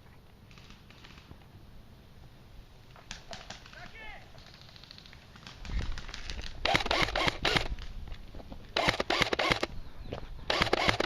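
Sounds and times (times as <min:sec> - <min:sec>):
airsoft gun firing bursts: 0:04.7 - 0:07.8, 0:08.8 - 0:09.7, 0:10.5 - 0:11.0.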